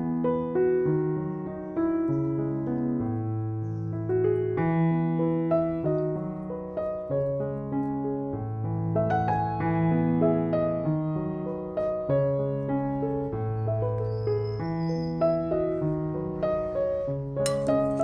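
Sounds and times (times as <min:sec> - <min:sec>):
gentle piano music: 0:00.0 - 0:18.0.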